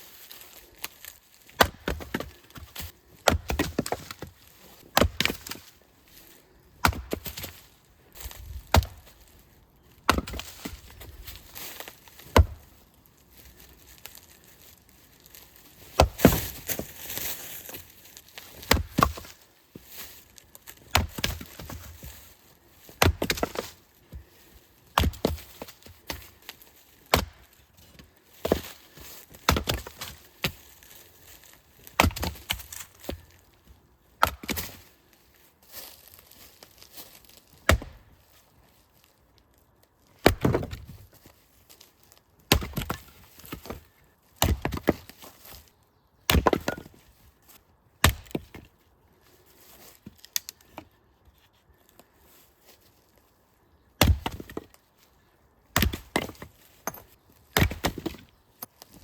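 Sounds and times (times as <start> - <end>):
axe chopping firewood: 0.8 - 5.8, 6.7 - 12.8, 15.8 - 33.4, 34.2 - 34.9, 37.6 - 38.2, 40.2 - 41.1, 42.4 - 45.6, 46.2 - 47.1, 48.0 - 48.7, 54.0 - 54.8, 55.7 - 59.0.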